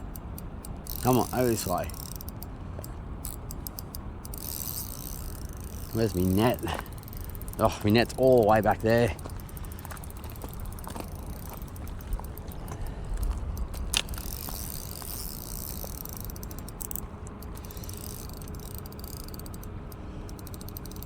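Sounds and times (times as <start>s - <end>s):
wind rumble on microphone: 8.8s - 16.3s.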